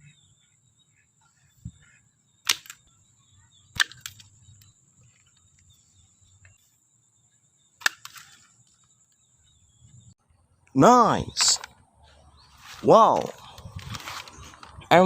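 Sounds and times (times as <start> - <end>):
toy bow plastic snaps: 2.4 - 2.8.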